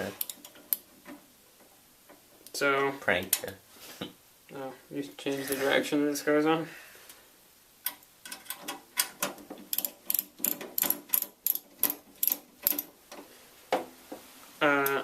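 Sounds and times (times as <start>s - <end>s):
screwdriver clicking: 9.7s - 12.9s.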